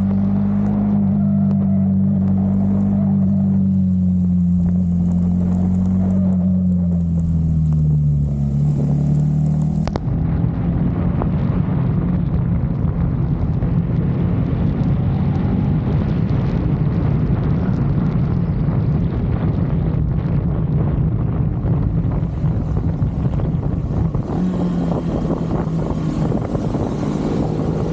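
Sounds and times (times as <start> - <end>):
motorcycle engine running: 15.0 - 27.9.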